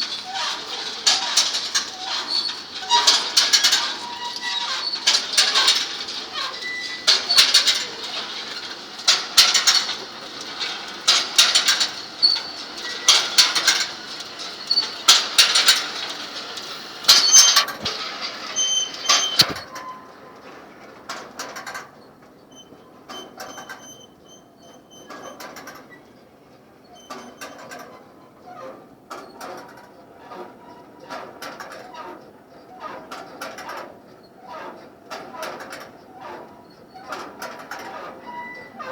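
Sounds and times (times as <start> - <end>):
metal parts scraping and squeaking: 0.0 - 20.0.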